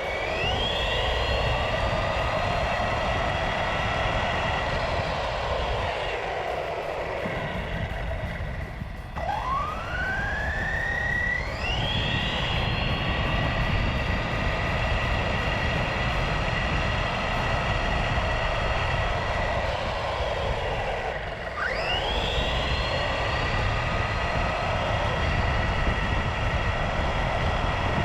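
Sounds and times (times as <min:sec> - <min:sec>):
rush of wind and tyres: 0:00.0 - 0:28.0
electric motor whining: 0:21.1 - 0:27.3.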